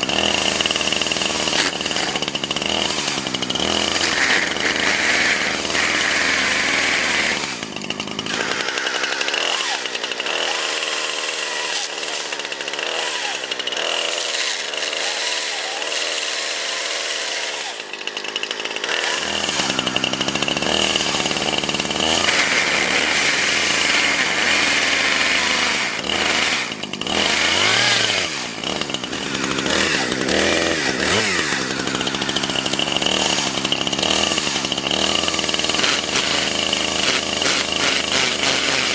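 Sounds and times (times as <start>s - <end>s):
chainsaw cutting at high revs: 0.0s - 38.9s.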